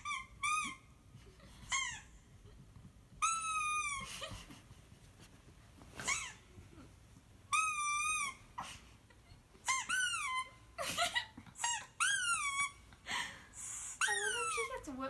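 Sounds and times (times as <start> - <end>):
squeaky toy squeaks: 0.0 - 2.2, 3.2 - 4.4, 6.0 - 6.4, 7.5 - 8.6, 9.6 - 12.9, 13.6 - 14.8.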